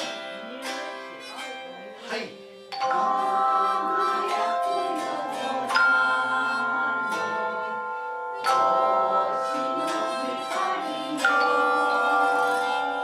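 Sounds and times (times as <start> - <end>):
tone chimes ringing in chords: 2.8 - 13.0
voices singing: 2.8 - 13.0.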